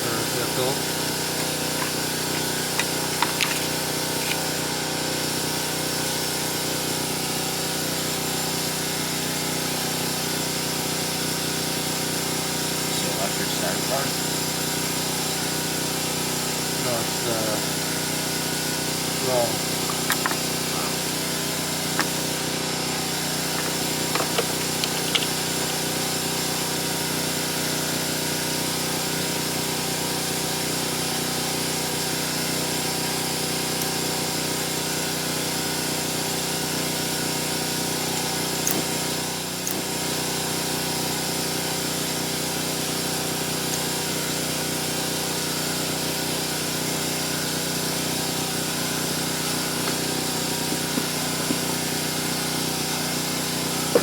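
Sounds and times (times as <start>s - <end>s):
small motor humming: 0.0s - 54.0s.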